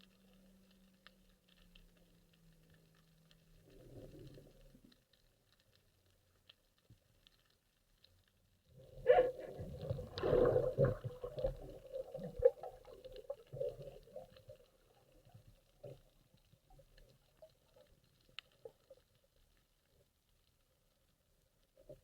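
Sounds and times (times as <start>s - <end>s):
faint ticks: 0.0s - 22.0s
water gurgling and bubbling: 8.8s - 14.9s.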